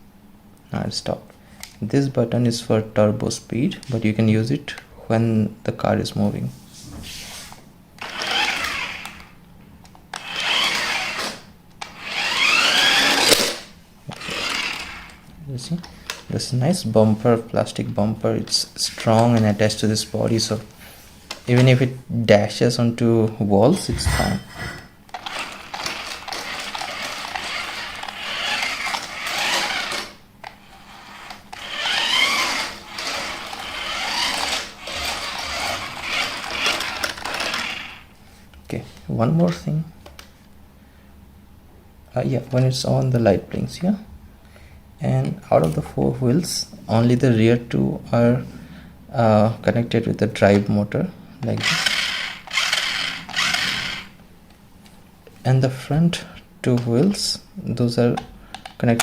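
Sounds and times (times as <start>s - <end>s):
toy truck electric motor whining: 8.0s - 9.3s, 10.1s - 15.2s, 24.1s - 38.1s, 51.6s - 54.2s.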